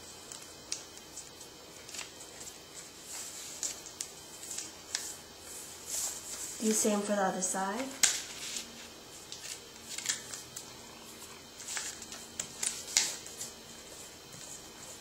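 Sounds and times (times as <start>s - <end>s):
paper being folded and creased: 0.3s - 5.2s, 8.0s - 10.4s, 11.6s - 13.4s.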